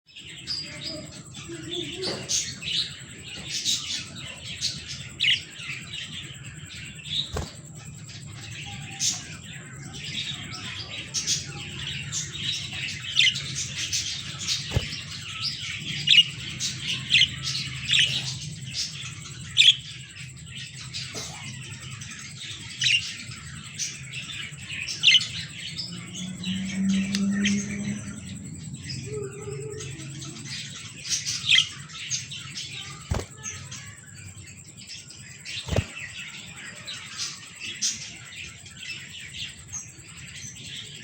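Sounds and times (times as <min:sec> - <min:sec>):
budgerigars chirping and warbling: 0:00.2 - 0:26.6, 0:29.9 - 0:41.0
sharp bird calls: 0:01.8 - 0:20.4, 0:30.7 - 0:41.0.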